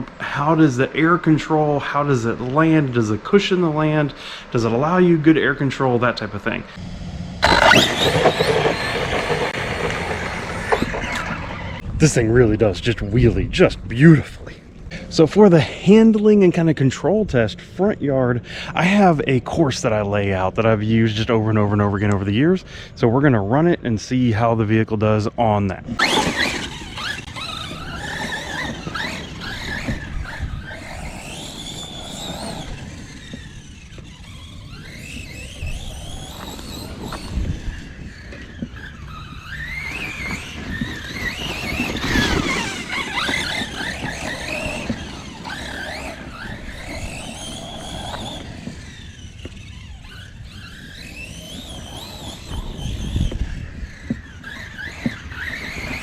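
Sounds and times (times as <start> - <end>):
electric motor whining: 6.7 - 11.8, 25.9 - 56.0.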